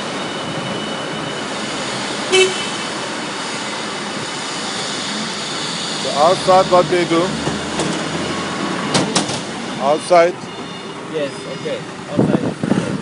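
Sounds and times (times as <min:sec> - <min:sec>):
factory floor noise: 0:00.0 - 0:11.1
forklift horn toot: 0:02.3 - 0:02.8.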